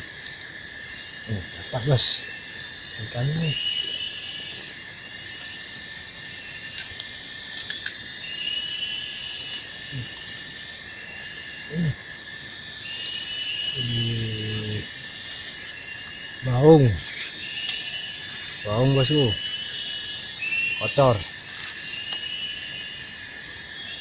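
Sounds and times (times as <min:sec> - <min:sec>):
insects chorus: 0:00.0 - 0:24.0
rising insect call: 0:00.0 - 0:24.0
short low grunts: 0:11.7 - 0:12.0, 0:13.8 - 0:14.9.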